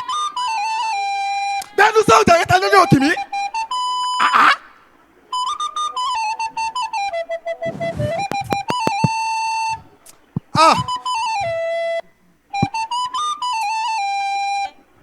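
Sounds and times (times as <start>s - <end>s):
sharp knocks: 7.7s - 9.2s, 10.4s - 10.9s.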